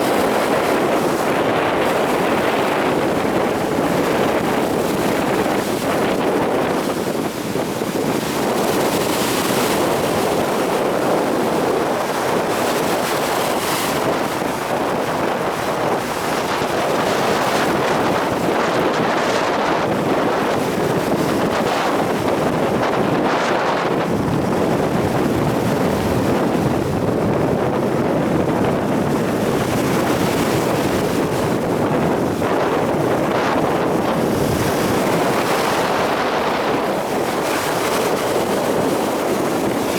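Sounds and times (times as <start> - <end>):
storm surf breaking on shore: 0.0 - 39.9
wind buffeting microphone: 0.0 - 39.9.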